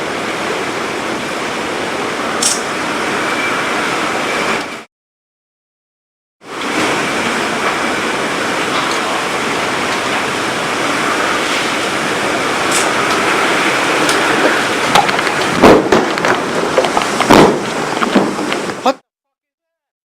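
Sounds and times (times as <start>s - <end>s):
heavy wind and rain: 0.0s - 4.9s, 6.4s - 19.0s
sharp thumps: 14.9s - 18.8s.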